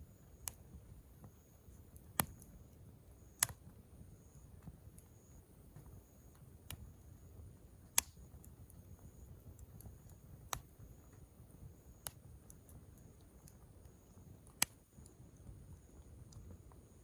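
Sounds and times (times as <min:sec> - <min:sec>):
faint high-pitched hum: 0:00.0 - 0:17.0
campfire crackling and popping: 0:01.9 - 0:02.5, 0:07.8 - 0:16.8.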